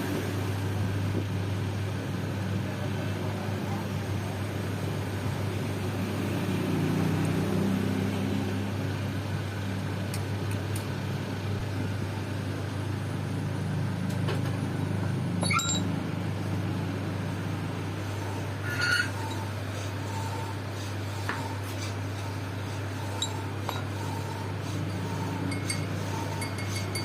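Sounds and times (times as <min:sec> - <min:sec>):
metal on metal squeal: 0:15.4 - 0:15.9, 0:18.6 - 0:19.5.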